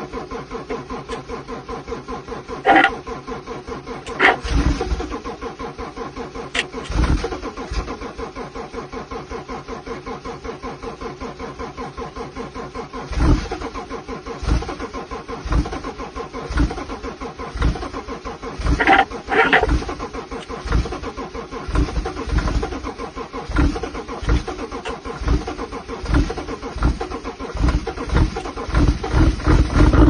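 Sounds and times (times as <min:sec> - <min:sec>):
car engine cranking: 0:00.0 - 0:30.0.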